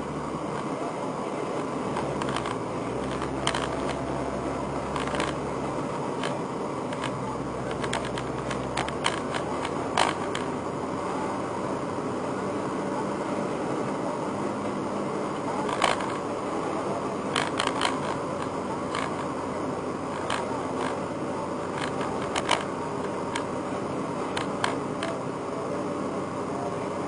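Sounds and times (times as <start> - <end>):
car engine and road hum: 0.0 - 27.0
sharp clicks and knocks: 1.6 - 4.2, 4.8 - 10.5, 15.6 - 16.2, 17.3 - 19.3, 20.1 - 21.0, 21.7 - 22.7, 24.3 - 25.2.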